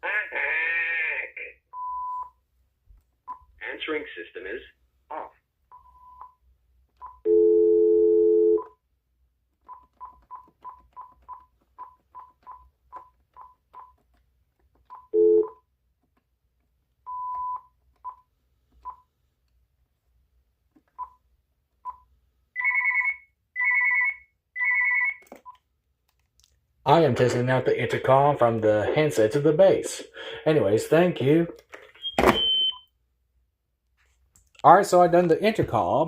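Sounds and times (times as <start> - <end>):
long low phone tone: 7.2 - 8.8, 15.1 - 15.6
phone ringing bursts: 22.6 - 25.2
cordless phone key beeps: 32.0 - 32.8.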